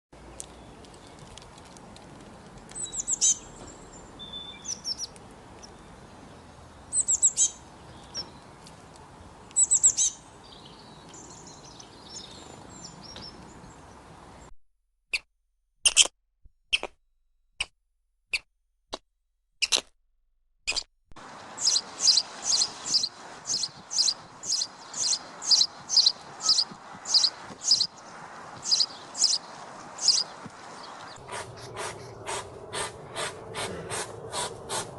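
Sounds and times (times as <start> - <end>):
small birds chirping: 0.2 - 14.5, 20.7 - 33.7.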